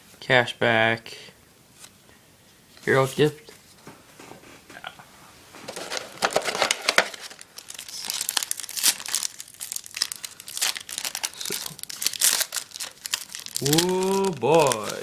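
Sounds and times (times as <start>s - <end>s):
foil wrapper crinkling: 5.7s - 15.0s.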